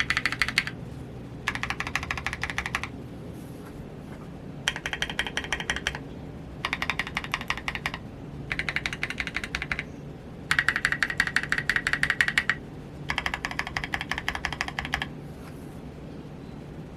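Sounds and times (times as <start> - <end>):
typing on mechanical keyboard: 0.0 - 0.8, 1.4 - 2.9, 4.7 - 6.0, 6.6 - 9.9, 10.5 - 15.1.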